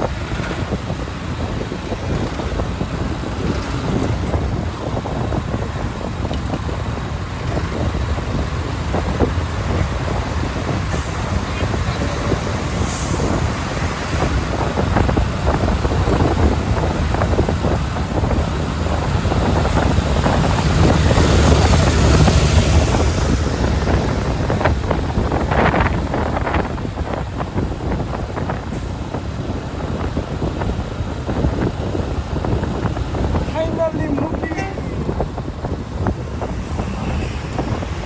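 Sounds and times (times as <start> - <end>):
road noise: 0.0 - 38.0
wind rushing over microphone: 0.0 - 38.0.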